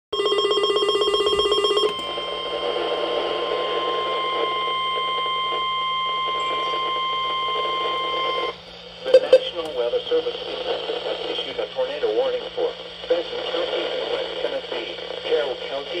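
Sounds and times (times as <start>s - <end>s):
steady alarm tone: 0.1s - 9.5s
rapid pulsing beep: 0.2s - 9.5s
radio hiss: 2.0s - 16.0s.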